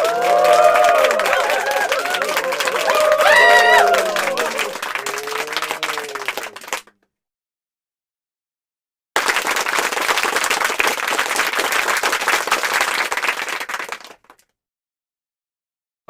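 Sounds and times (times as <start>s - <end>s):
crowd clapping: 0.0s - 7.0s, 9.2s - 14.5s.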